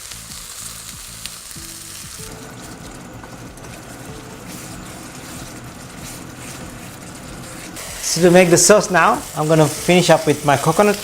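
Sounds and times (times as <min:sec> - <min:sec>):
curry sizzling in a hot pan: 0:00.0 - 0:11.0.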